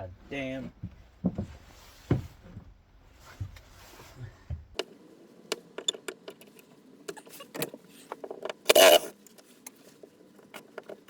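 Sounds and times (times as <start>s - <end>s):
metallic clicks of hand tools: 8.7s - 9.1s.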